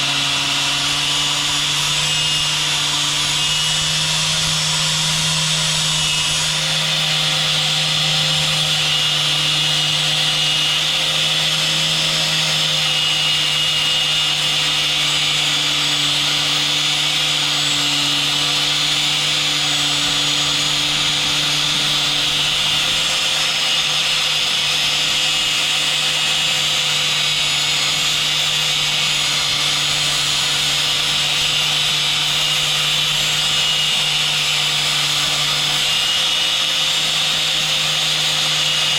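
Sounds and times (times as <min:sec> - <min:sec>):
angle grinder cutting steel: 0:00.0 - 0:38.9.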